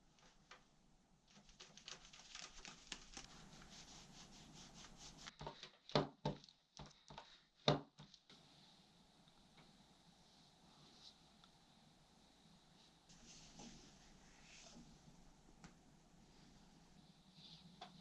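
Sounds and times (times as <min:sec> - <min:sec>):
rustling and handling noise: 0:00.0 - 0:08.5, 0:12.8 - 0:16.6
faint hiss: 0:01.3 - 0:05.4, 0:08.2 - 0:18.0.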